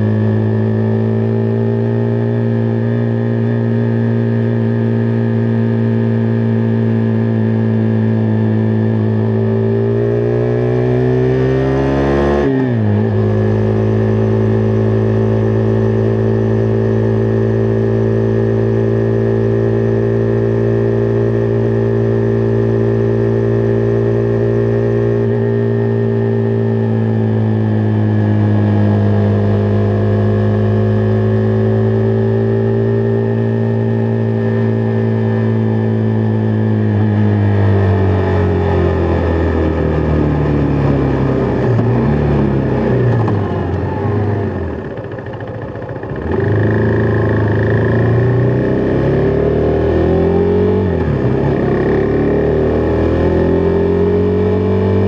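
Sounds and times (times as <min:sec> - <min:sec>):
motorcycle engine running: 0:00.0 - 0:55.0.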